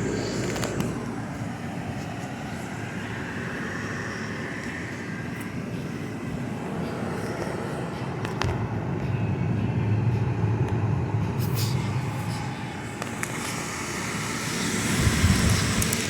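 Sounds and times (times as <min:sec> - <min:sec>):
low hum: 0:05.8 - 0:16.0.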